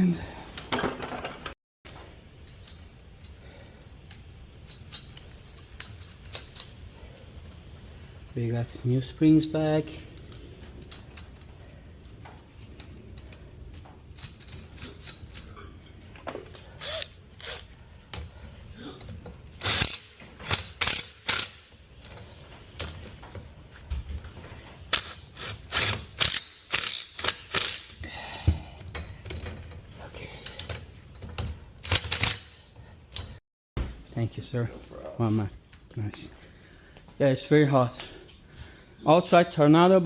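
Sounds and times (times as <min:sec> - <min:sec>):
metal tools clicking and clanking: 0:00.5 - 0:01.6, 0:04.0 - 0:06.8, 0:09.5 - 0:23.4, 0:24.8 - 0:28.0, 0:28.8 - 0:33.4.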